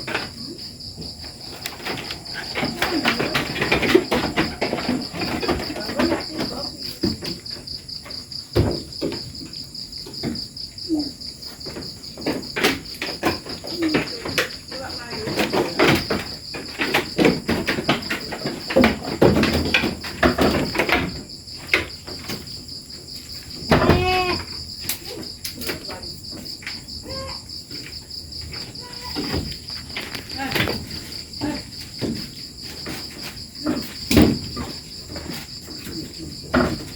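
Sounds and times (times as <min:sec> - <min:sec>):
clicks and knocks: 0:00.0 - 0:07.4
crickets chirring: 0:00.0 - 0:36.9
goat kid bleating: 0:23.7 - 0:24.6, 0:28.8 - 0:29.3.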